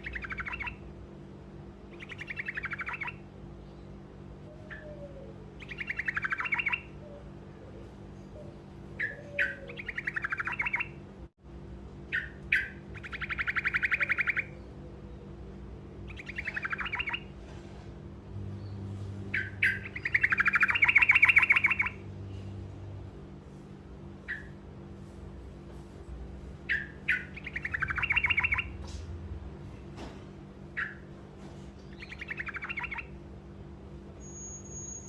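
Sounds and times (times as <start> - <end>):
songbird rolling trills: 1.9 - 3.2, 12.1 - 15.4, 16.0 - 17.3.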